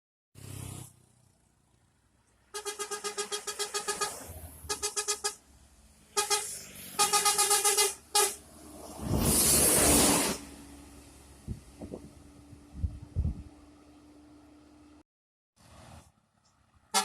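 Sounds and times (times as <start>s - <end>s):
bus horn pulsing musical tones: 2.5s - 5.4s, 6.1s - 8.4s.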